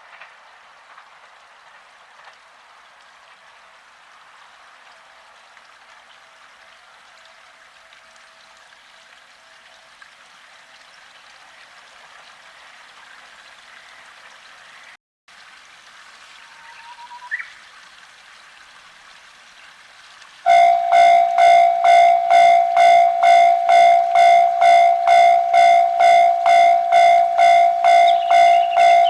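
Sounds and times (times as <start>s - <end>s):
steady hiss: 0.0s - 14.9s
faint thin tone: 20.5s - 29.0s.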